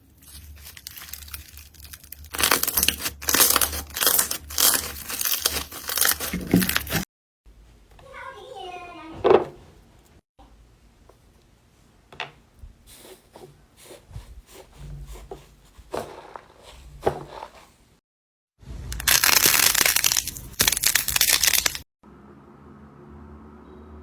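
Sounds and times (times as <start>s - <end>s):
slime crackling crunch: 0.0s - 7.0s, 19.0s - 21.8s.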